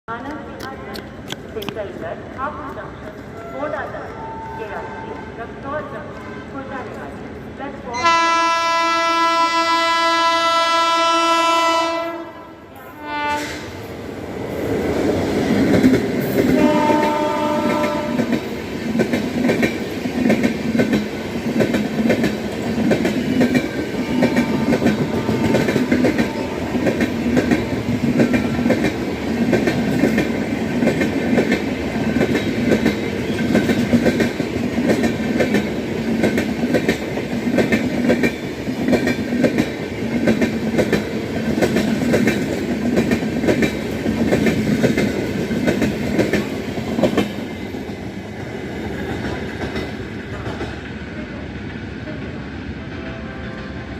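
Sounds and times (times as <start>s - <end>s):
train horn: 7.9s - 13.7s, 16.5s - 18.4s, 24.0s - 26.9s, 52.9s - 53.9s
train wheels clacking on rails: 14.6s - 53.9s.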